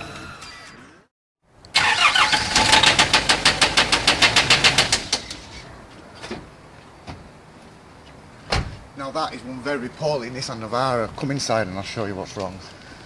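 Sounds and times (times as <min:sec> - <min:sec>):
diesel engine metallic knocking: 0:02.6 - 0:05.3.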